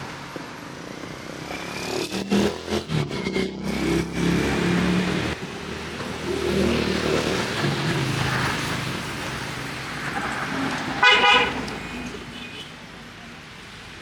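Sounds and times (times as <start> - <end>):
vehicle engine revving: 1.3 - 11.8.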